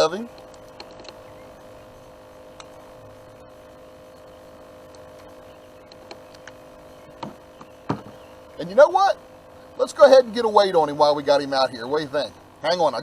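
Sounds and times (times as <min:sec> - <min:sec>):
faint steady hum: 0:00.0 - 0:13.0
small handling clicks: 0:00.3 - 0:01.2, 0:04.2 - 0:06.6.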